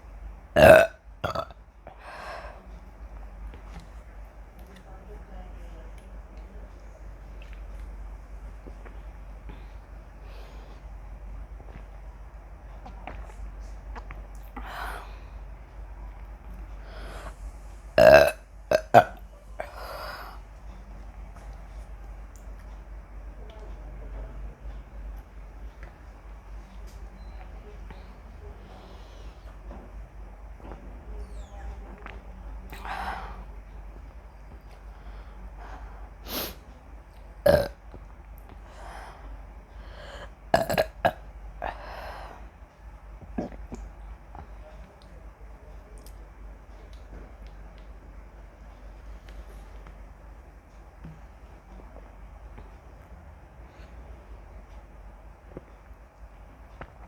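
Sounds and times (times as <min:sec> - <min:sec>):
woman burping: 0:00.6 - 0:01.5, 0:18.0 - 0:19.8, 0:37.5 - 0:37.8, 0:40.6 - 0:41.2.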